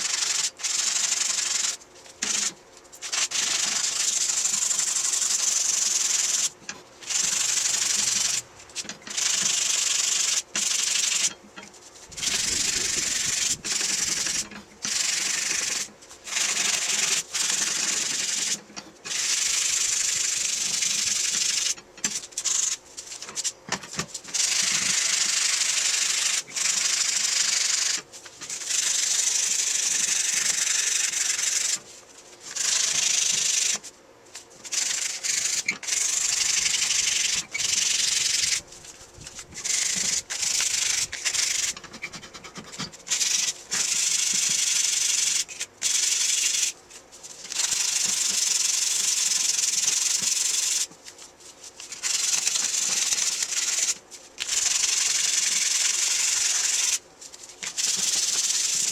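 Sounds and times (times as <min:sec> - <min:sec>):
rubbing strokes hissing: 0:12.0 - 0:18.5.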